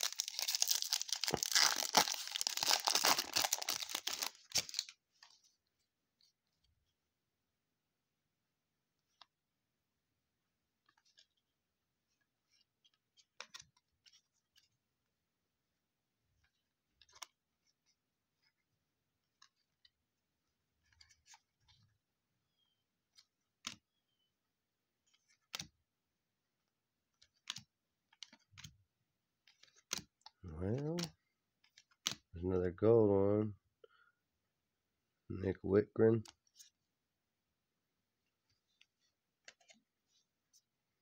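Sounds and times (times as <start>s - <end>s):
trading cards rustling and clicking: 0.0s - 5.4s, 17.0s - 17.4s, 27.1s - 28.8s, 29.4s - 32.3s, 38.4s - 40.7s.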